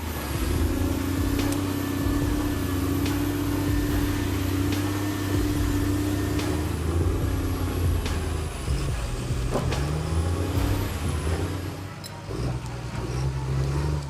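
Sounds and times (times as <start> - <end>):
heavy diesel engine under load: 0.0 - 14.0.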